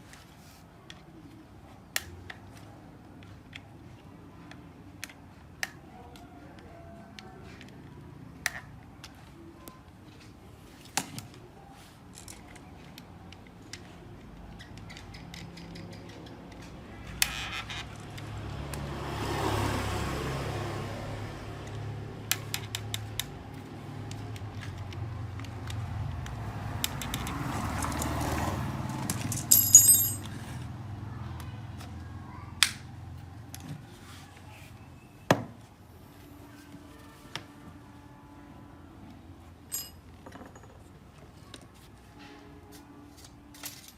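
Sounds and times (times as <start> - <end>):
metal tools clicking and clinking: 27.0 - 30.6, 39.7 - 40.9
small metal parts clattering: 27.2 - 30.6, 39.7 - 40.9.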